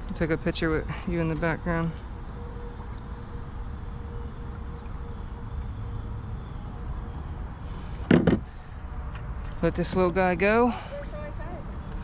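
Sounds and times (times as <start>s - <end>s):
high-pitched insect trill: 0.0s - 12.0s
low wind rumble: 0.0s - 12.0s
loud knock: 8.1s - 8.4s.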